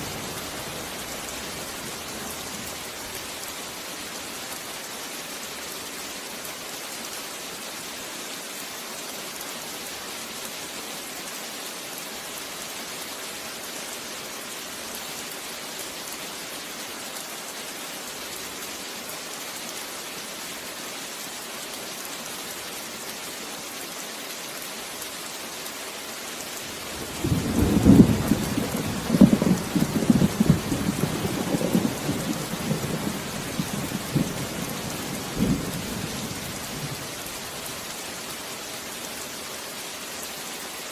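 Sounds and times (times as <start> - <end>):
heavy rain falling: 0.0 - 40.9
thunder rumbling and cracking: 26.8 - 37.0.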